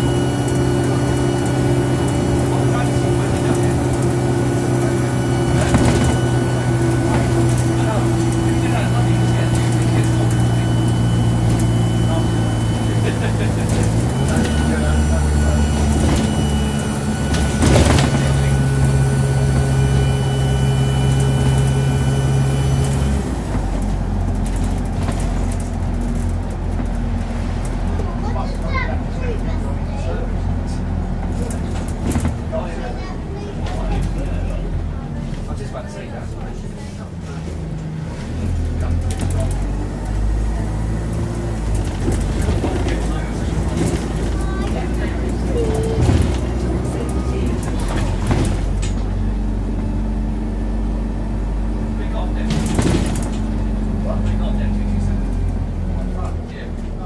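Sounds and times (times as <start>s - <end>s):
turbocharger whistling: 0.0s - 23.2s
bus diesel engine drone: 0.0s - 57.0s.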